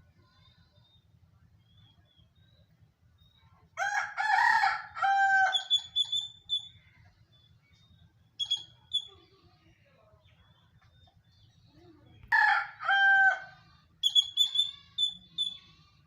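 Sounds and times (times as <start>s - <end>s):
rooster crowing: 3.8s - 5.8s, 12.3s - 13.6s
squirrel chirping: 5.5s - 6.7s, 8.4s - 9.1s, 14.0s - 15.7s.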